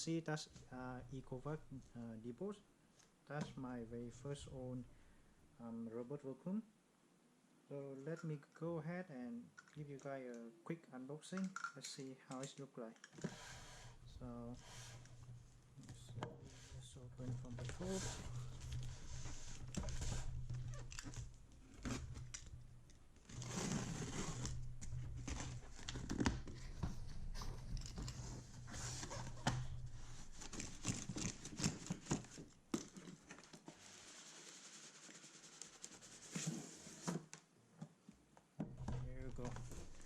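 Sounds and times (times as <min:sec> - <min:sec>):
low steady hum: 0:00.0 - 0:06.6, 0:13.8 - 0:32.4
tape tearing: 0:23.2 - 0:26.7, 0:27.8 - 0:34.2
cardboard and packaging crinkling: 0:23.3 - 0:36.4.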